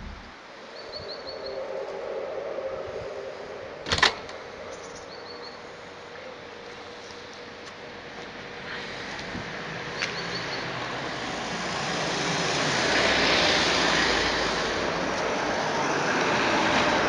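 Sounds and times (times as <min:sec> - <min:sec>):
faint droning tones: 0:00.0 - 0:09.4
rushing rumble: 0:00.0 - 0:09.7.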